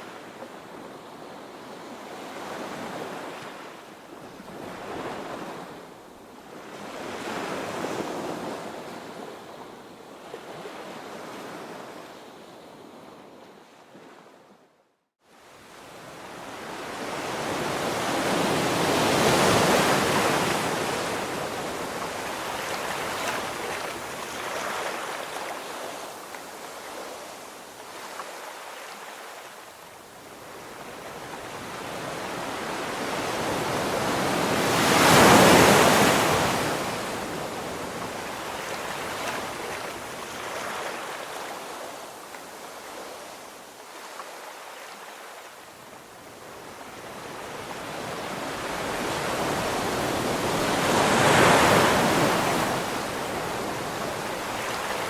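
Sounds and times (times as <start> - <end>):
ocean surf washing onto beach: 15.9 - 29.6, 30.3 - 45.5, 46.4 - 55.0.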